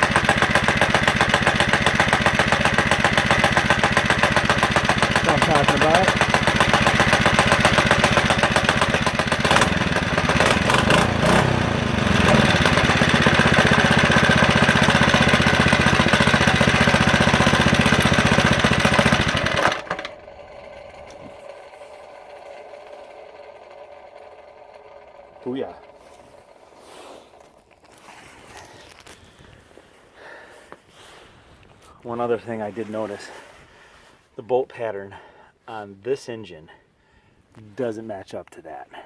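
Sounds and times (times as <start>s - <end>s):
small minibike engine running: 0.0s - 27.5s.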